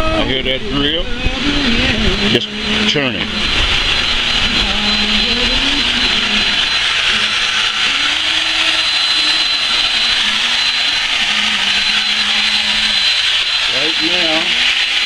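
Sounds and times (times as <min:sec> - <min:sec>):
electric drill whirring: 0:01.2 - 0:15.0.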